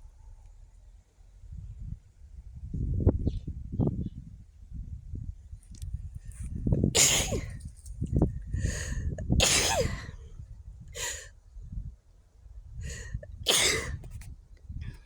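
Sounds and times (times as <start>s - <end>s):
person sneezing: 7.0s - 7.6s, 9.4s - 10.2s, 12.9s - 14.2s.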